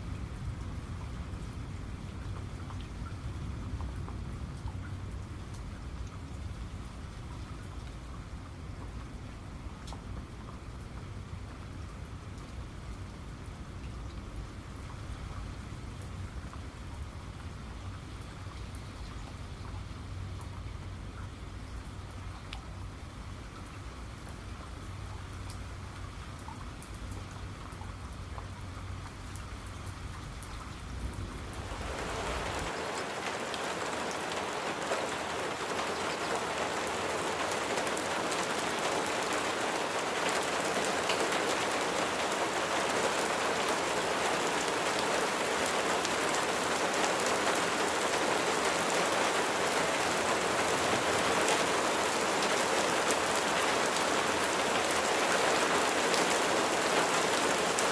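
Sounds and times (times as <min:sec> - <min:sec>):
rain falling: 0:00.0 - 0:57.9.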